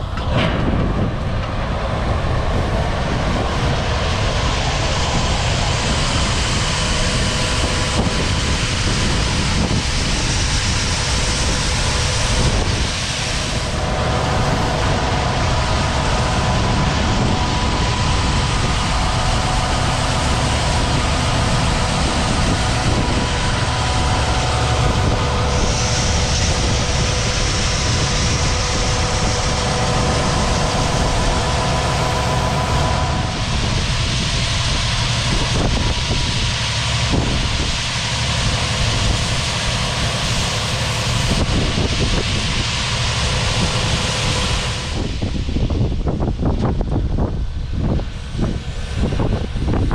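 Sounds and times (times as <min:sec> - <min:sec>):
combine harvester drone: 0:00.0 - 0:49.9
steady whining tones: 0:00.0 - 0:49.9.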